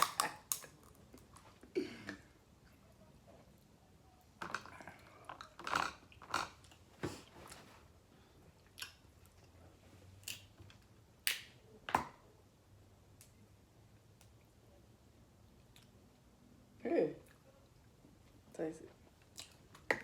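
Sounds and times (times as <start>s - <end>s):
crab shells cracking: 0.0s - 1.4s, 4.4s - 6.6s.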